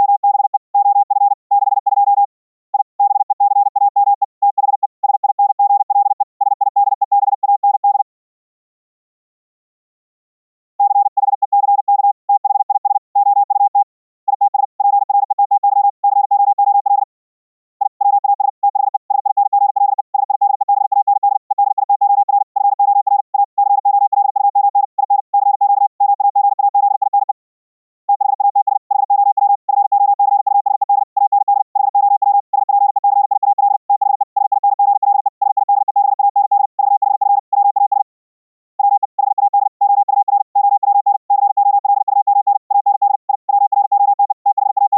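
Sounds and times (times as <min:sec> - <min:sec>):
morse code tone: 0:28.1 - 0:38.0, 0:38.8 - 0:44.9.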